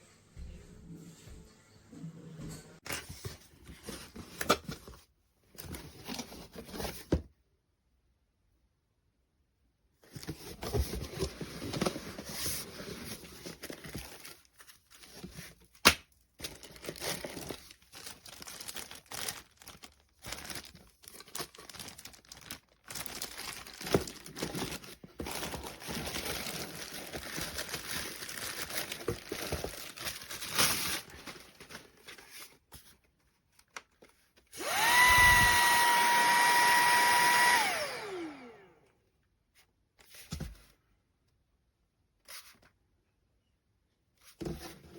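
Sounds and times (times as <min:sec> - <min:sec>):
vacuum motor whining: 0:34.6 - 0:38.8.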